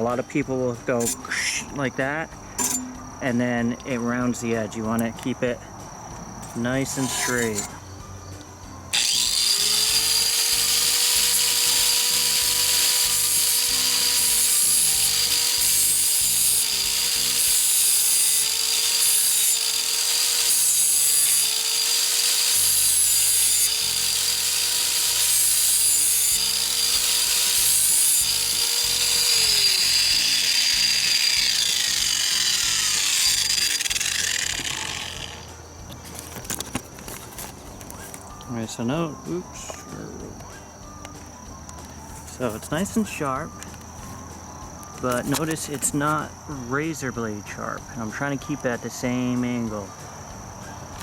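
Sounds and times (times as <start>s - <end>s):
metal grinding hiss: 6.8s - 7.8s, 8.9s - 35.5s
grinder motor whine: 8.9s - 35.5s.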